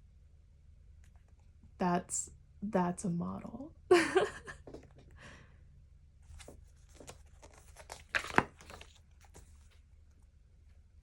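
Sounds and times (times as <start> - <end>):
page flicks: 6.3 - 9.8
paper pages rustling: 6.3 - 9.9.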